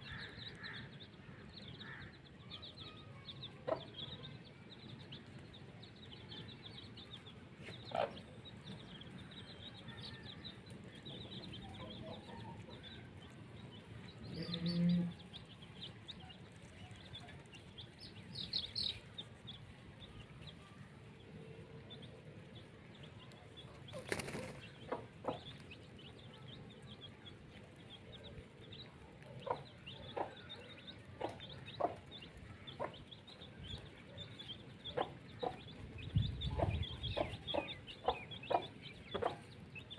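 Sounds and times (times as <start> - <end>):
small birds chirping: 0.0 - 39.9
chickens clucking: 3.5 - 4.3, 6.4 - 9.2, 10.6 - 19.7, 21.7 - 39.9.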